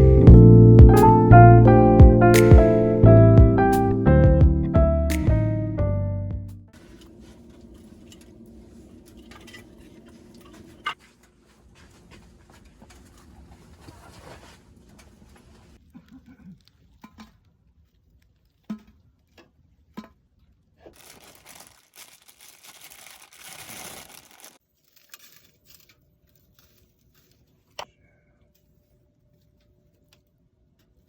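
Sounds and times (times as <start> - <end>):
crinkling and tearing: 20.8 - 27.8.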